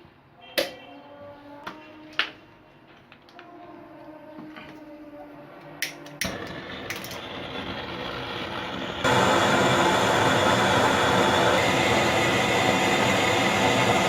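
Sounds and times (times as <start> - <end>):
gas torch flame rushing: 6.2 - 14.0.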